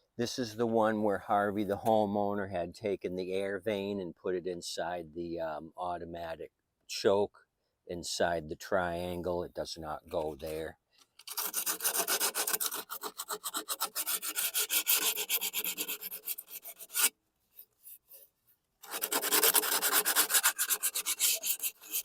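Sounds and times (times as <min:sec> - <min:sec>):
sandpaper scrubbing metal: 0:11.3 - 0:17.1, 0:18.8 - 0:22.0.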